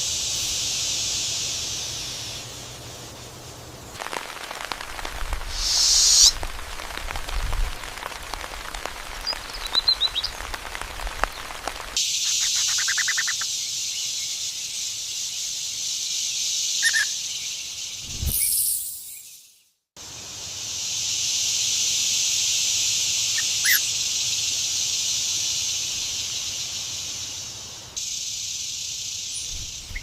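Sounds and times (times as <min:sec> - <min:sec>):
snake hissing: 0:00.0 - 0:03.3, 0:04.6 - 0:06.4
crackling rain-like noise: 0:00.2 - 0:12.7
bird chirps: 0:12.1 - 0:14.9, 0:16.2 - 0:19.5.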